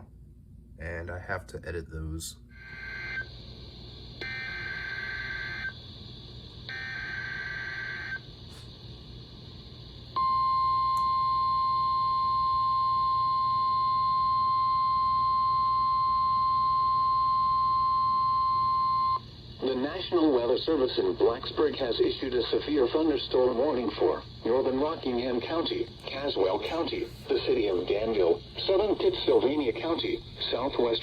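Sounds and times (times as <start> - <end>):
steady alarm tone: 2.5 - 3.5, 4.2 - 5.9, 6.6 - 8.3, 10.2 - 19.3
warbling data tones: 2.6 - 3.3
radio hiss and hum: 19.2 - 31.0.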